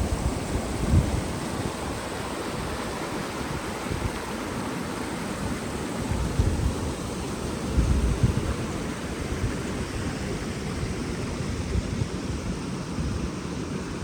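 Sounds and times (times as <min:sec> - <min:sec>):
river rushing: 0:00.0 - 0:14.0.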